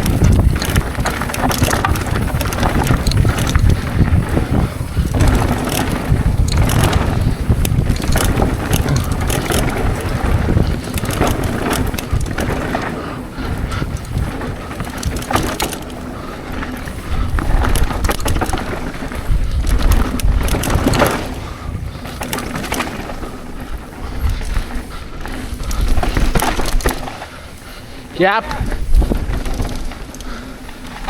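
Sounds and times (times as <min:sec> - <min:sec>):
bike clacking and rattling: 0:00.0 - 0:31.0
tyres rumbling on dirt and rock: 0:00.0 - 0:31.0
wind buffeting microphone: 0:00.0 - 0:31.0.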